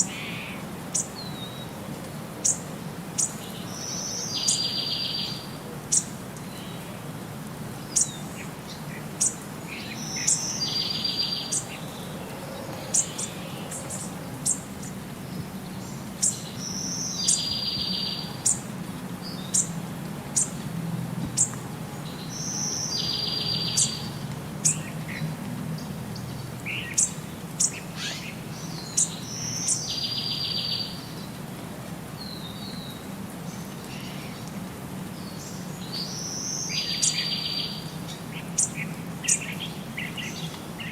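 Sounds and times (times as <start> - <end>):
birds chirping: 0.0 - 7.0, 7.8 - 31.4.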